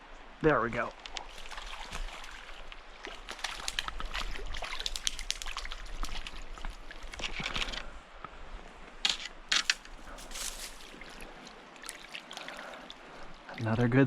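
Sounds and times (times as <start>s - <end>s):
stream flowing: 0.0s - 14.0s
fish splashing in water: 1.3s - 7.3s, 10.1s - 13.6s.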